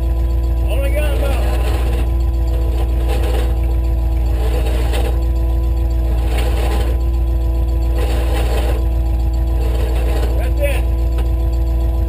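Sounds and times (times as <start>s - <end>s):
engine idling: 0.0s - 12.0s.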